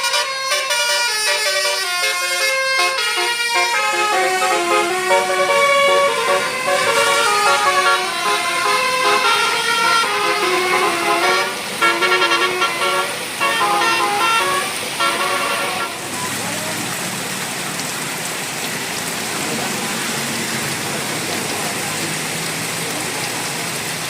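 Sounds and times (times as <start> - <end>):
bus musical horn melody: 0.0 - 16.0.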